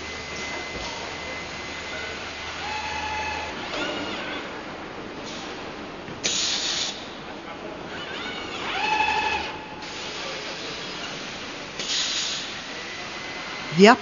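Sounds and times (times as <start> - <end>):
machine hiss and hum: 8.8 - 14.0
loud burst of hiss: 11.8 - 12.6.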